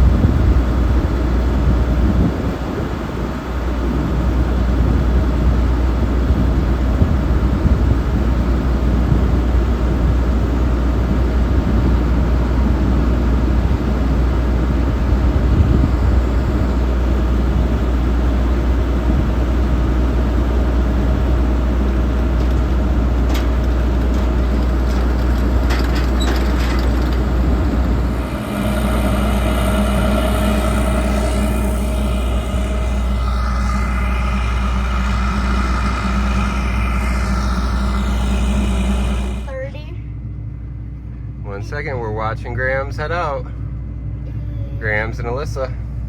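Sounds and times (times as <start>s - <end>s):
hum with pitched tones: 13.0s - 40.9s
diesel machinery rumbling: 14.3s - 39.9s.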